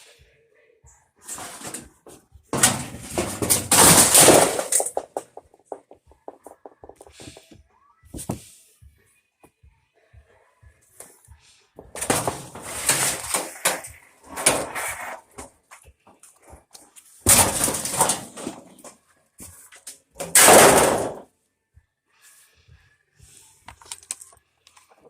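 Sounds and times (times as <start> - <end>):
building materials scraping and rattling: 1.2 - 7.5, 11.9 - 21.2.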